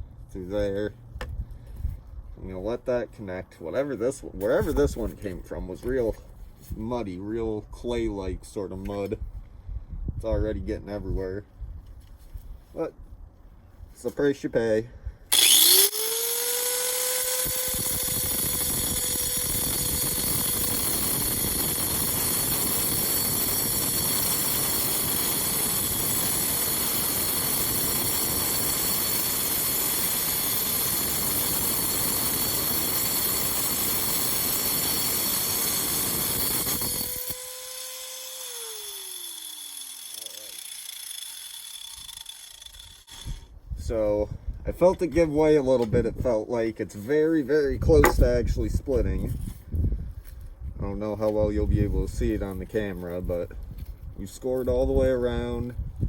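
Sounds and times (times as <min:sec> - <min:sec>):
angle grinder motor whine: 0:15.3 - 0:43.5
grinder cutting stone: 0:15.3 - 0:43.5.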